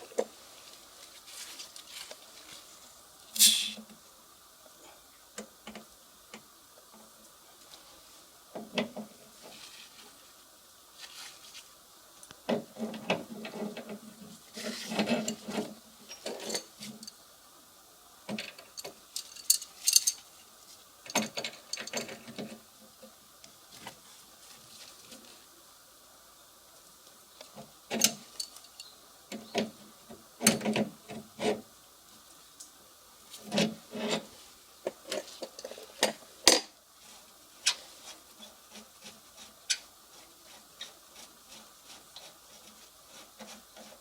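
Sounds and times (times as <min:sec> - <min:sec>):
metal parts rattling and scraping: 0:18.4 - 0:20.3.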